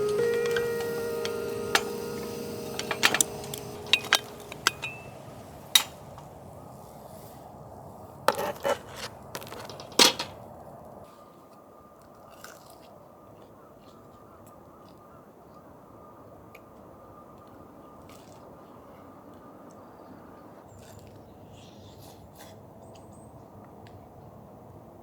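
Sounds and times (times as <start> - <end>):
objects knocking and clicking: 0.0 - 6.0, 8.3 - 10.4.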